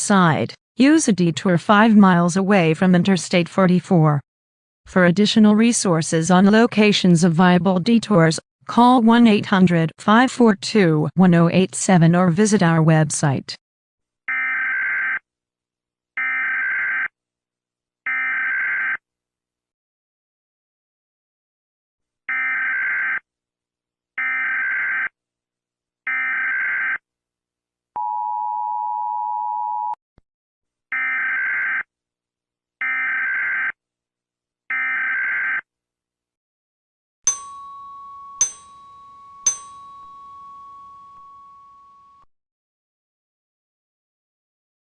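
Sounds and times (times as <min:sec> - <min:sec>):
sharp bell-like dings: 0:37.3 - 0:42.3
steady held tone: 0:37.3 - 0:42.3.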